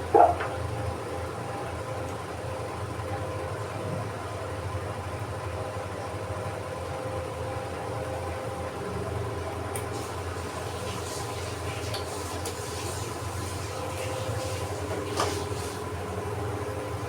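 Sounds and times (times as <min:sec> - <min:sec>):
low machine hum: 0:00.0 - 0:17.0.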